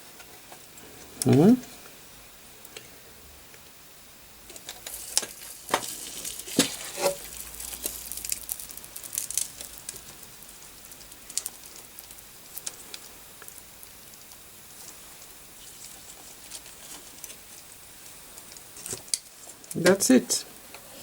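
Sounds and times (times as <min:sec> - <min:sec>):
molten solder crackling and popping: 0:03.5 - 0:21.0.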